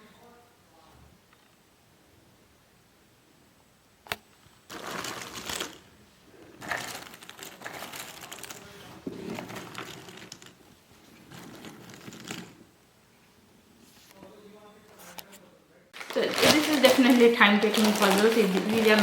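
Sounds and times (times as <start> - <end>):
puzzle pieces rustling and clattering: 4.7 - 5.9, 6.6 - 12.6, 16.0 - 19.0.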